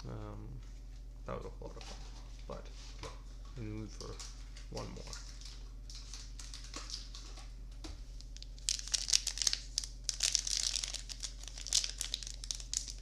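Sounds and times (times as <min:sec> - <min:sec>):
foil wrapper crinkling: 0:03.9 - 0:07.4, 0:08.2 - 0:13.0.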